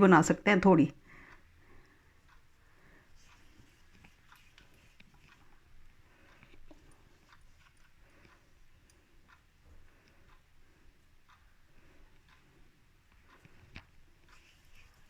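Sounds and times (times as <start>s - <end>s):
sticky clicks of fingers rolling paste: 13.1s - 15.0s.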